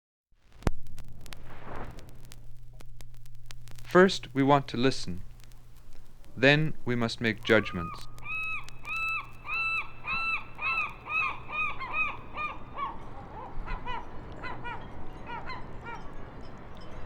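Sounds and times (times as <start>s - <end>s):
low steady hum: 0.5s - 17.0s
geese honking: 3.9s - 17.0s.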